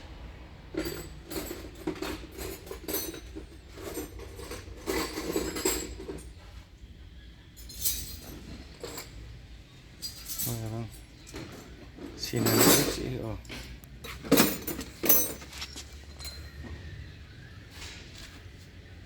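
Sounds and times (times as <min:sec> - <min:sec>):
metallic clinking and clattering: 0:00.7 - 0:06.4, 0:07.6 - 0:09.3, 0:10.0 - 0:16.7.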